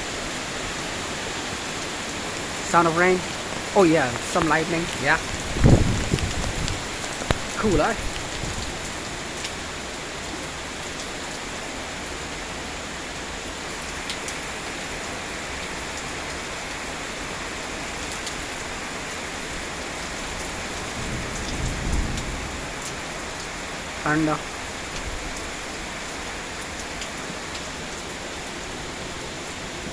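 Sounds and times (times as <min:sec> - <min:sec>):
raindrops ticking close by: 0:00.0 - 0:29.9
steady rainfall: 0:00.0 - 0:29.9
thunder rumbling: 0:02.6 - 0:09.0, 0:20.8 - 0:23.4.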